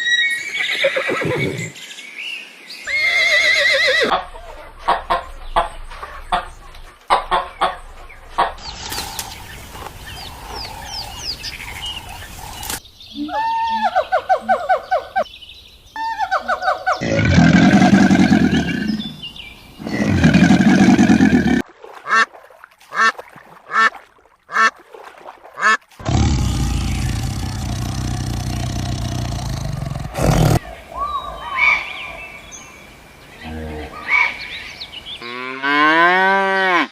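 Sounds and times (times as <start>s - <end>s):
animal calls: 26.0s - 31.9s.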